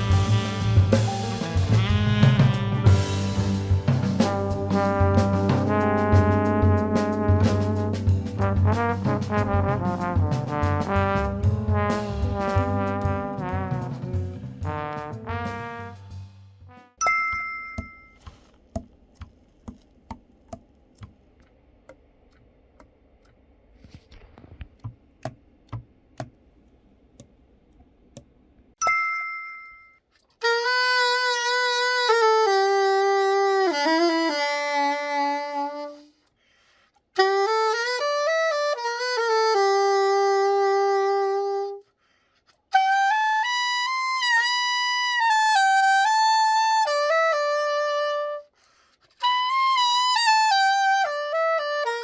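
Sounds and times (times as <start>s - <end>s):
saxophone playing held notes: 0.0s - 16.0s, 30.4s - 36.2s, 37.2s - 41.8s, 42.7s - 48.5s, 49.2s - 52.0s
two-note chime: 17.0s - 18.2s.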